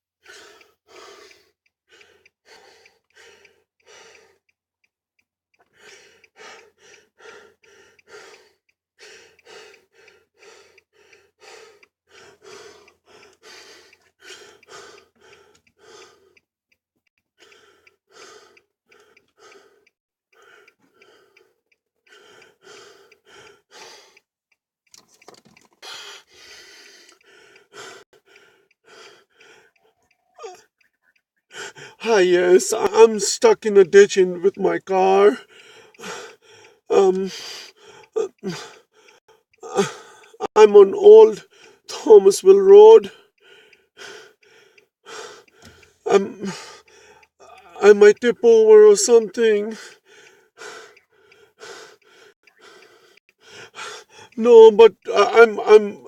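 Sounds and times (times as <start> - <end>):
person breathing quickly with gasps: 0.2 - 4.5, 5.6 - 16.4, 17.4 - 24.2, 25.8 - 32.0, 35.4 - 40.5, 41.4 - 41.9, 43.1 - 47.8, 49.7 - 54.4.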